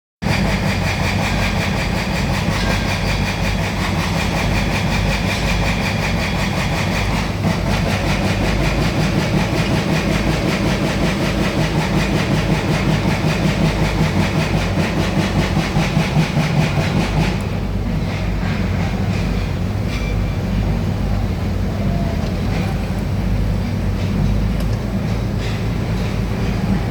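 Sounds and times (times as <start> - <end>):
diesel engine running: 0.2 - 26.9.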